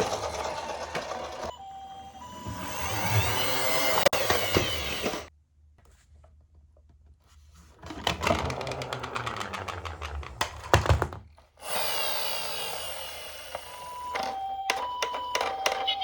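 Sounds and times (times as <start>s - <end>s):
toy cars rattling down slope: 0.0s - 5.3s, 7.9s - 16.0s
two-tone toy siren: 0.0s - 5.3s, 11.7s - 16.0s.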